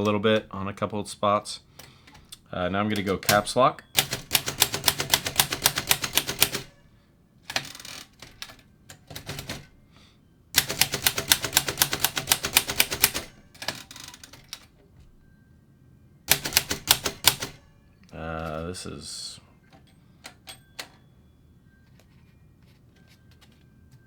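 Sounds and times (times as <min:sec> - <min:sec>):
typewriter keys struck: 0:02.9 - 0:06.8, 0:07.5 - 0:09.7, 0:10.6 - 0:14.7, 0:16.3 - 0:17.6.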